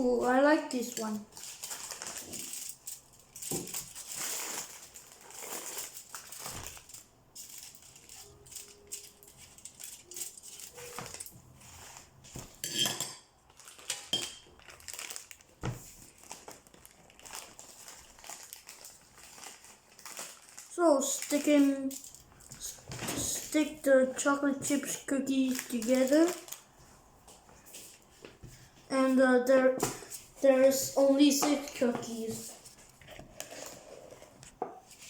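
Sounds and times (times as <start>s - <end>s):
utensils and dishes clinking: 7.4s - 11.4s, 12.5s - 13.3s.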